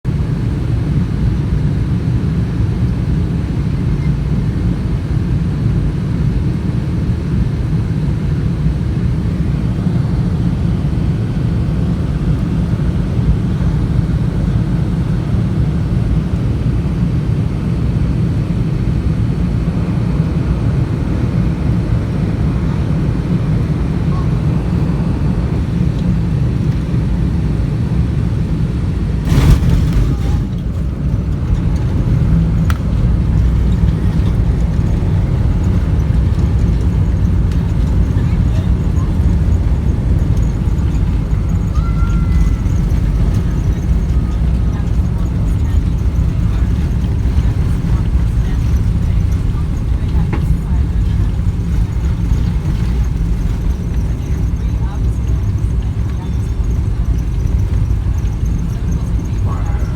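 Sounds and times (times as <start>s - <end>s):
airliner cabin rumble: 0.0s - 59.9s
sudden loud jolt: 29.2s - 35.0s.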